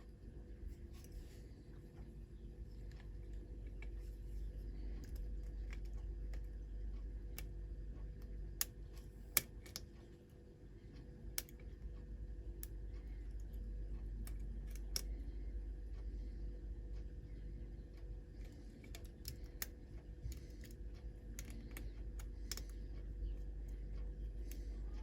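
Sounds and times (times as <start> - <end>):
steady low hum: 0.0 - 25.0
lock pick clicking and scratching: 18.3 - 24.8.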